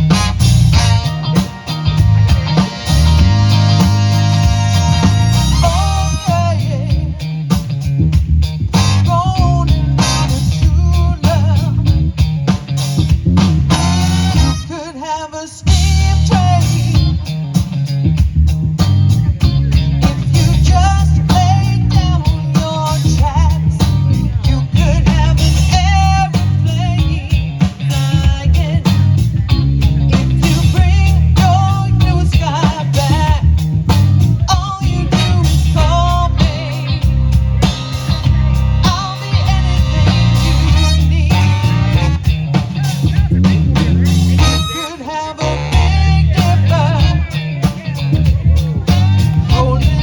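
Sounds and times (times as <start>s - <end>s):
wavering lead melody: 0.0s - 7.0s, 13.7s - 14.8s, 34.9s - 50.0s
horn section: 0.0s - 7.1s, 8.7s - 11.5s, 13.5s - 17.0s, 34.9s - 47.8s
steady drum beat: 0.0s - 14.8s, 15.7s - 50.0s
strong bass line: 0.0s - 14.8s, 15.7s - 50.0s
live band playing rock: 0.0s - 50.0s.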